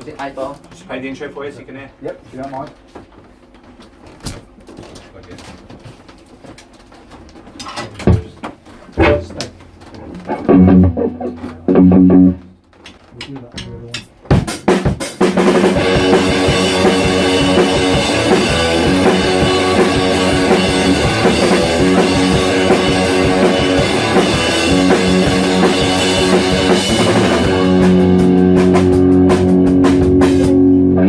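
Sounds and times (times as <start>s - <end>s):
rock band playing live: 10.2s - 12.4s, 14.4s - 31.0s.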